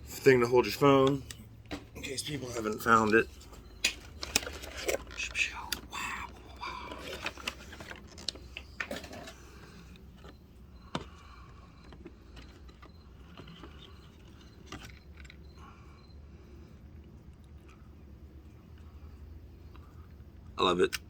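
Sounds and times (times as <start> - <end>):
plastic packaging rustling: 3.0 - 10.4
small plastic parts clicking: 3.8 - 11.1.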